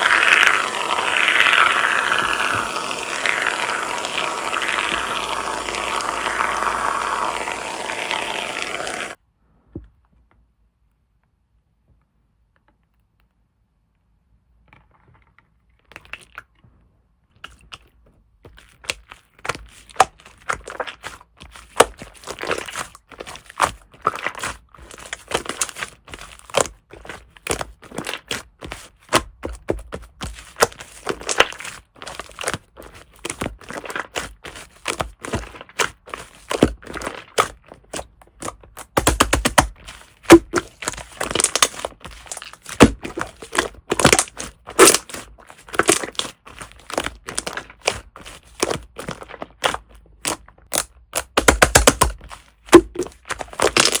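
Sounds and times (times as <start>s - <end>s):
slime clicking and crackling: 0.0s - 9.2s, 30.2s - 54.0s.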